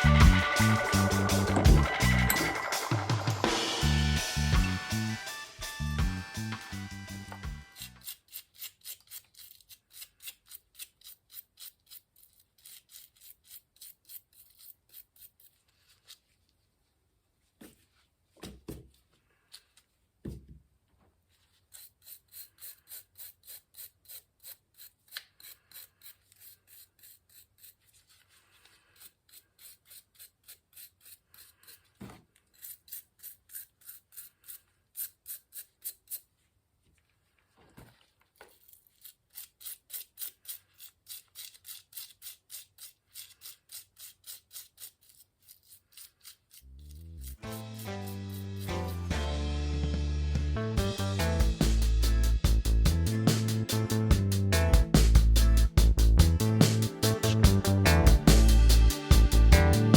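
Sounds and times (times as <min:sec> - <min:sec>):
scrubbing strokes: 0:21.3 - 0:36.5, 0:37.1 - 0:49.3.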